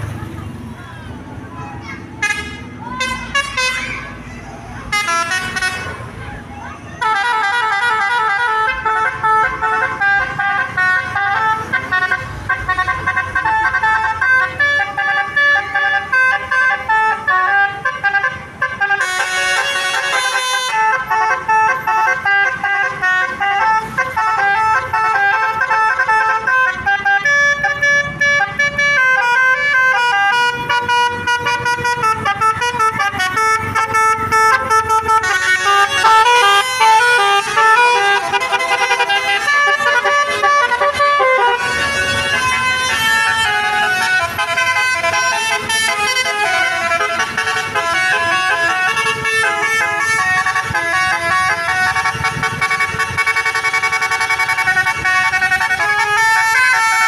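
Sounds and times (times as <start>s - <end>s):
bus horn playing a tune: 2.2s - 4.1s, 4.9s - 6.2s, 6.9s - 57.0s.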